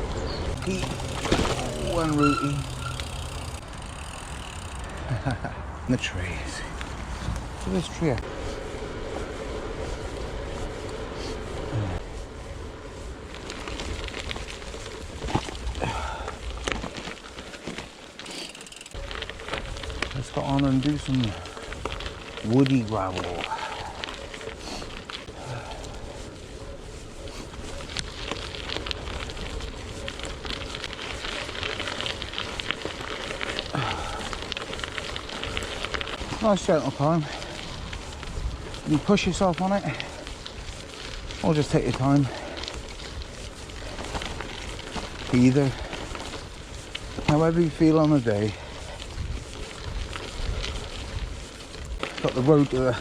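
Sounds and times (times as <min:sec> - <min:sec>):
bike tyres rolling on gravel: 0:00.0 - 0:53.0
short falling squeak: 0:00.6 - 0:03.5.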